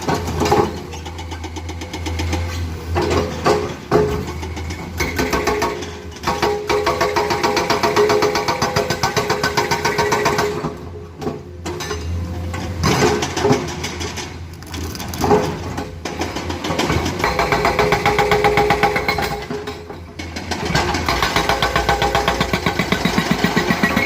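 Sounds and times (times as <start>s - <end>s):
excavator diesel engine working: 0.0s - 24.0s.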